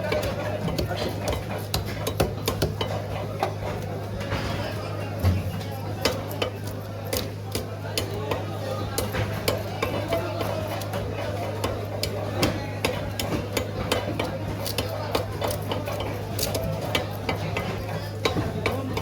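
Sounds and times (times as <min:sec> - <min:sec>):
blade chopping fish on cutting block: 0:06.0 - 0:19.0.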